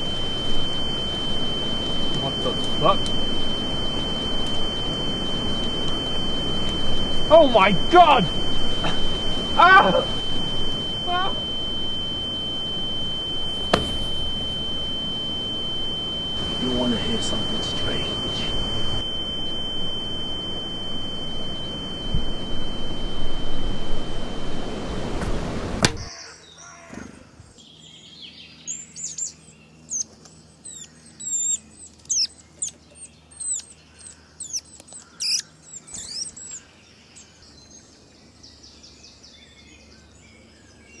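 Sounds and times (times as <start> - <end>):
high-pitched whistle: 0.0 - 26.1
birds chirping: 0.0 - 26.6.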